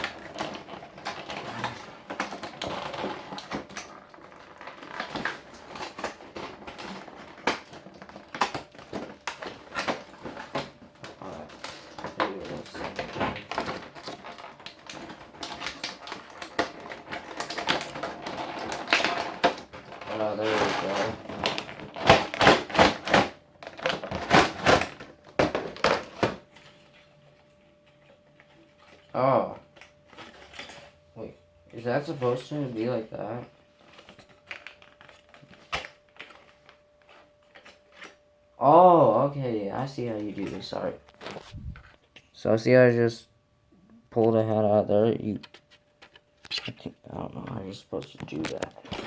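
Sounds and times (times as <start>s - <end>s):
hard plastic clicking and clattering: 47.9s - 49.0s.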